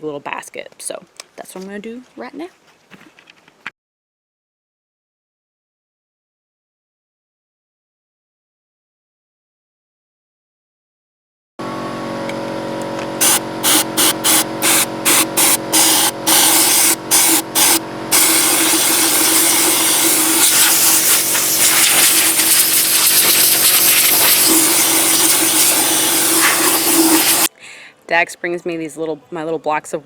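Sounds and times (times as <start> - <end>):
chainsaw revving and cutting wood: 11.6 - 27.5.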